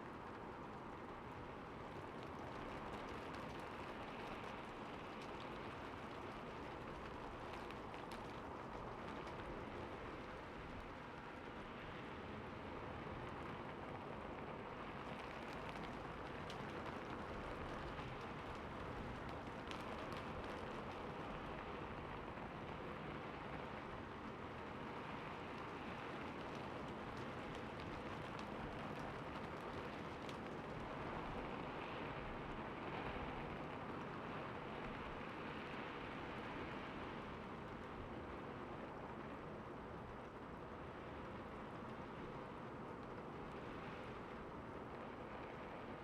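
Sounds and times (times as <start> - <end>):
rain on a roof: 0.0 - 46.0
raindrop ticks: 15.1 - 21.2, 26.2 - 31.4.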